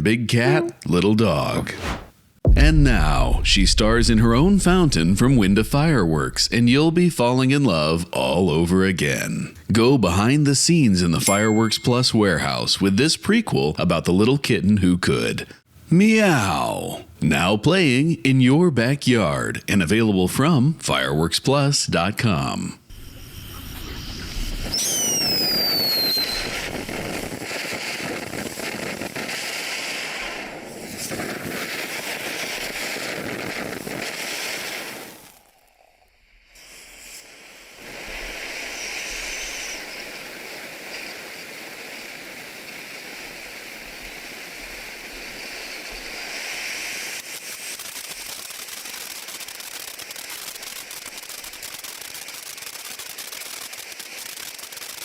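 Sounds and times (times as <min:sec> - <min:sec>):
firework crackling: 0:01.6 - 0:07.3, 0:23.5 - 0:35.7, 0:36.5 - 0:55.0
firework fountain hissing: 0:22.9 - 0:35.8, 0:36.4 - 0:55.0
high falling whistles: 0:23.3 - 0:26.7.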